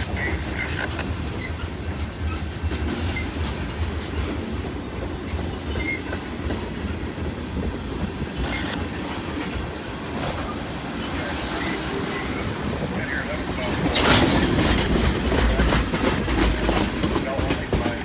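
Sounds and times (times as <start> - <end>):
clickety-clack over rail joints: 0.0 - 18.0
train wheels rumbling on rail: 0.0 - 18.0.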